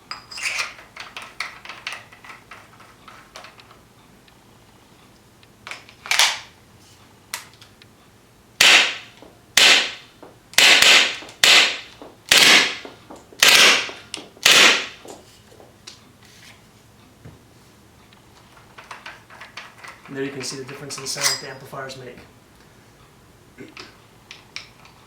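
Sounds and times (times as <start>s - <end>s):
airsoft gun shots: 8.6s - 15.1s.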